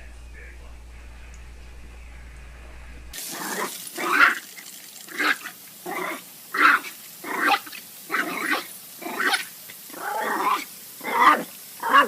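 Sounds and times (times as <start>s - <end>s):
pet animal vocal calls: 3.3s - 4.5s, 5.1s - 12.0s.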